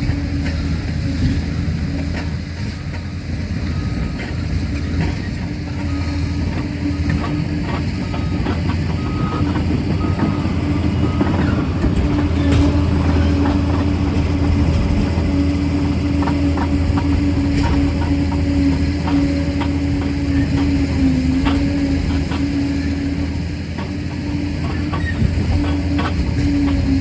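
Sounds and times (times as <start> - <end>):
diesel engine running: 0.0 - 27.0
steel tracks clanking: 0.0 - 27.0.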